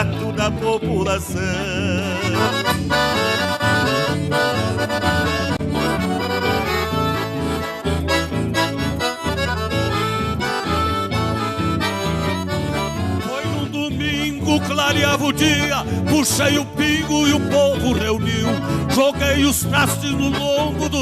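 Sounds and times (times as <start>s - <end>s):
accordion melody: 0.0s - 21.0s
rhythmic bass accompaniment: 0.0s - 21.0s.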